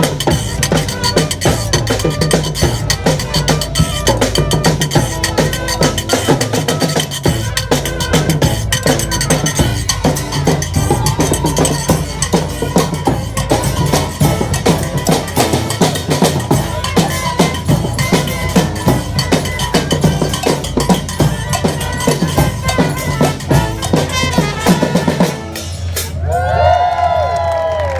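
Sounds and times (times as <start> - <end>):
bass drum and snare beat: 0.0 - 26.2
crowd cheering and whooping: 10.6 - 12.6, 26.1 - 27.9.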